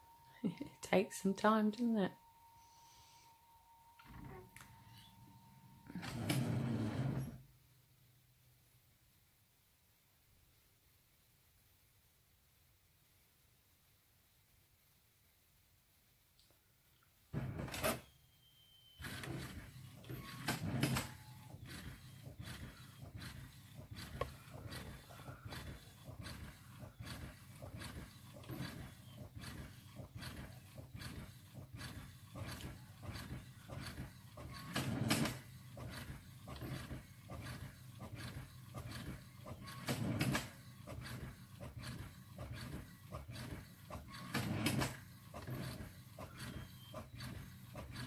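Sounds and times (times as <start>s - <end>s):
printer whirring and clunking: 4.0s - 7.4s, 17.4s - 18.0s, 19.0s - 48.0s
printer mechanical rattle: 19.0s - 48.0s.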